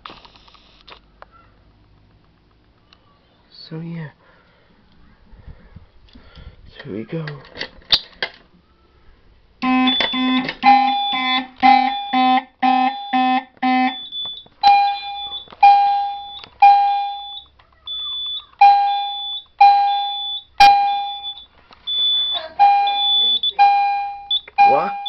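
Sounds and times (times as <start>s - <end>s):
fire alarm chime: 9.6s - 25.0s
fire alarm horn buzzing: 9.6s - 25.0s
high beep: 9.6s - 25.0s.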